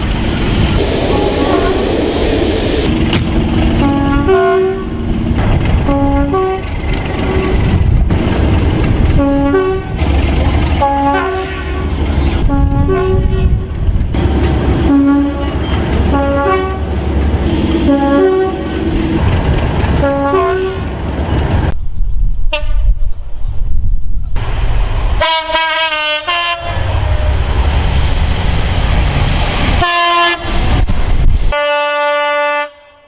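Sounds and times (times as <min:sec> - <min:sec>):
heavy train rumble: 0:00.0 - 0:33.0
train two-tone horn: 0:03.8 - 0:05.0, 0:05.8 - 0:07.7, 0:09.2 - 0:10.0, 0:10.7 - 0:13.7, 0:14.8 - 0:18.8, 0:20.0 - 0:20.8, 0:25.2 - 0:26.8, 0:29.8 - 0:30.6, 0:31.5 - 0:33.0.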